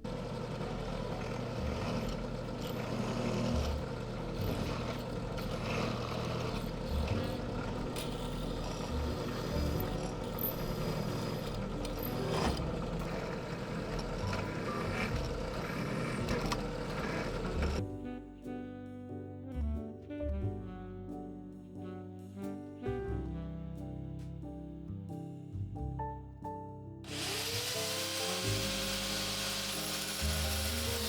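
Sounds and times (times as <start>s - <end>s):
power tool working steel: 0.0s - 17.8s, 27.1s - 31.0s.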